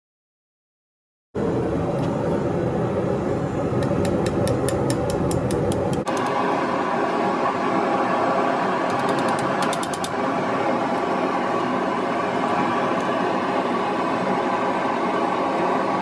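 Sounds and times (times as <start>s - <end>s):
machine running: 1.4s - 16.0s.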